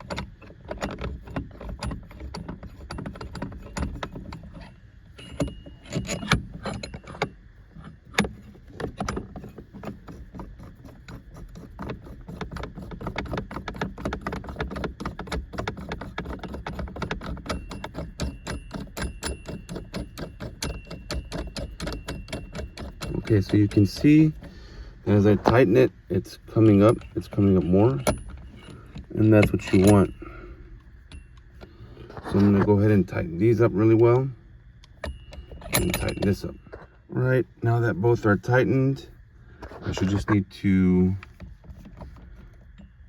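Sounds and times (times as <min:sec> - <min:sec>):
ratchet wrench clicking: 0:09.0 - 0:24.5
metal knocks: 0:35.0 - 0:36.8.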